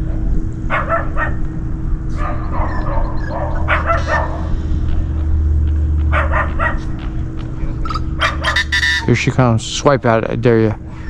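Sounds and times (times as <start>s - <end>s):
steady low rumble: 0.0s - 11.0s
dog barking in quick yelps: 2.2s - 4.5s.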